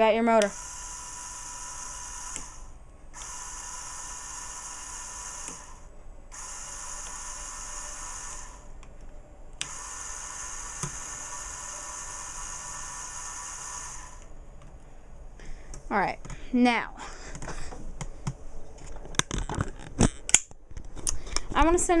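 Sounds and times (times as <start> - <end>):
small electric motor whining: 0.4 - 8.7, 9.6 - 14.3.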